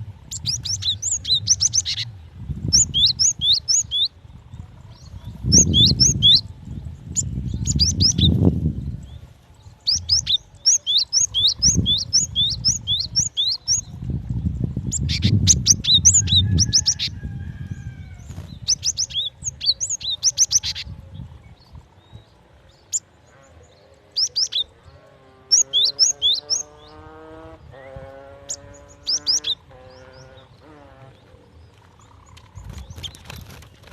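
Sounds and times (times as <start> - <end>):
bird high chirps: 0.2 - 4.2, 5.0 - 9.2, 9.8 - 23.1, 24.1 - 24.7, 25.5 - 27.0, 28.4 - 30.6.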